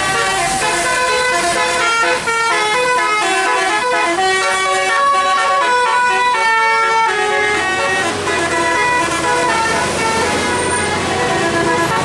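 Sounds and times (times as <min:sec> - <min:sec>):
musical air horn playing a tune: 0:00.0 - 0:12.0.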